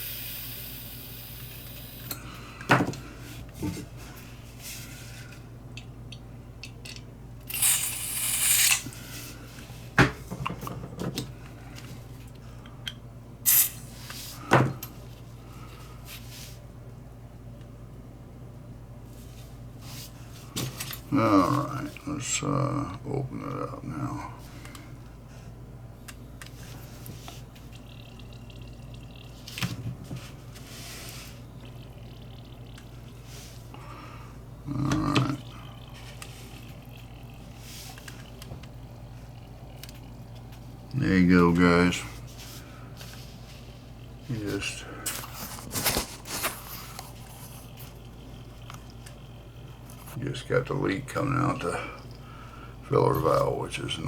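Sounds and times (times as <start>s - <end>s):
hiss: 0.0s - 2.2s, 7.5s - 8.9s, 13.5s - 13.9s
water dripping and sloshing: 26.8s - 33.8s.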